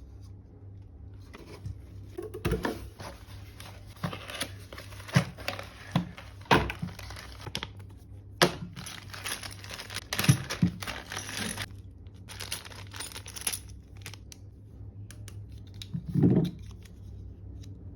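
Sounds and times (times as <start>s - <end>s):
wrapping crinkling and rustling: 3.1s - 14.4s.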